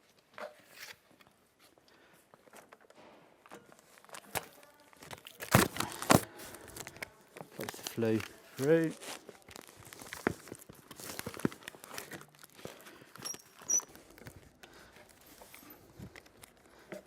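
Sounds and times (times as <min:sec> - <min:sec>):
brief high squeaks: 0:13.2 - 0:14.0.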